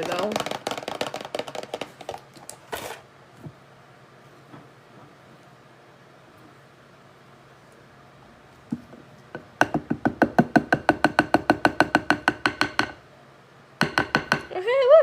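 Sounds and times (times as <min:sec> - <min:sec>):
utensil striking a mixing bowl: 0:09.4 - 0:13.0, 0:13.8 - 0:14.6.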